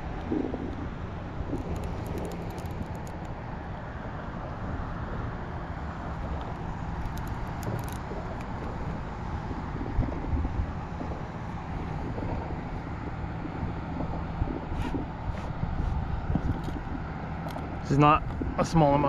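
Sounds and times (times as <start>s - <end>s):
wind rumble on microphone: 0.0s - 19.0s
faint clicks: 1.5s - 3.4s, 6.2s - 8.8s.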